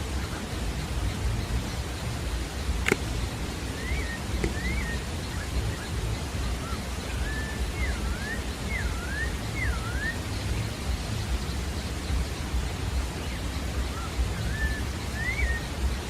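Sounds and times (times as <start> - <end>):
low background rumble: 0.0 - 16.0
thrush whistling: 2.7 - 10.7, 13.8 - 15.9.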